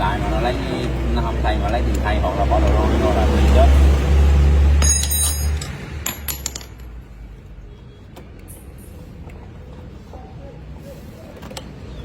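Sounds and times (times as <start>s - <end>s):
shop background: 0.0s - 12.0s
metallic clinks: 4.8s - 6.9s.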